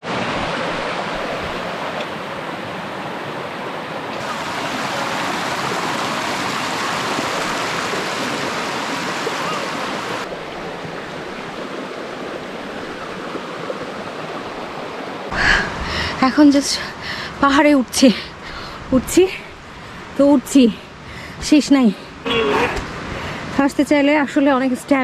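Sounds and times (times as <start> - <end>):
stream rushing over rocks: 0.0 - 15.8.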